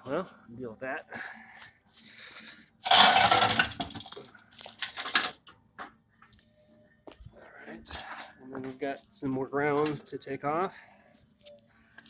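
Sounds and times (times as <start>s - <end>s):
metal parts clattering and rattling: 2.8s - 5.5s.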